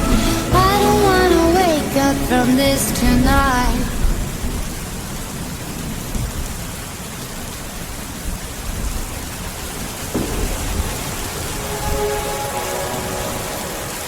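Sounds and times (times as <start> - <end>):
steady rain: 0.0 - 14.0
low rumble of thunder: 3.0 - 12.1.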